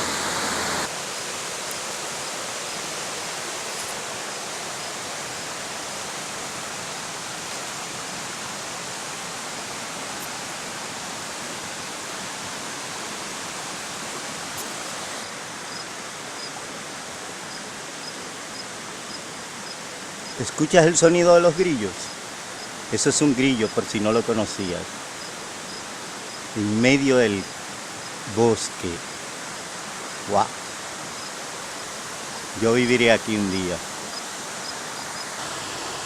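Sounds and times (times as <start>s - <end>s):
river water rushing: 0.0s - 36.0s
faint cricket chirp: 1.2s - 6.3s, 9.5s - 10.6s, 14.4s - 36.0s.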